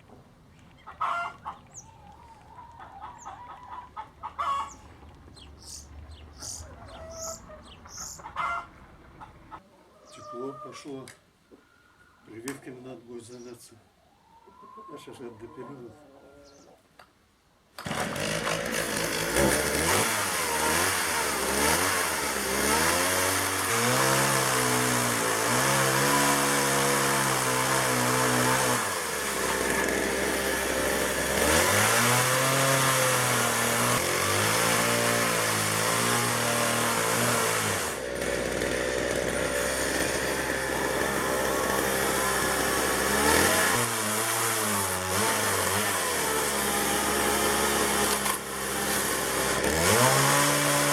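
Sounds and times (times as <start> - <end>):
chainsaw cutting log: 17.8 - 50.9.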